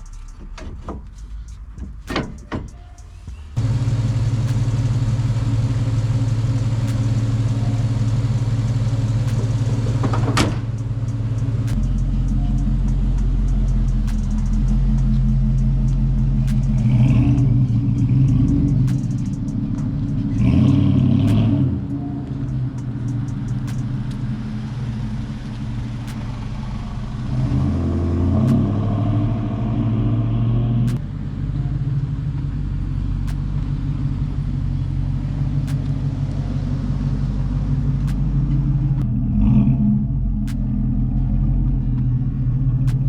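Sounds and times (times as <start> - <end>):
vehicle engine rumbling: 0.0 - 43.0
small clicks: 12.9 - 15.3, 22.3 - 24.2.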